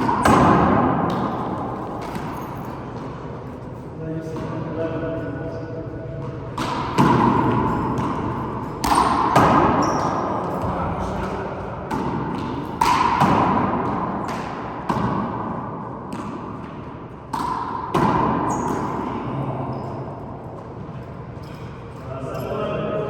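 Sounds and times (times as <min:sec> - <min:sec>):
handball smacking off walls: 0:06.6 - 0:15.4.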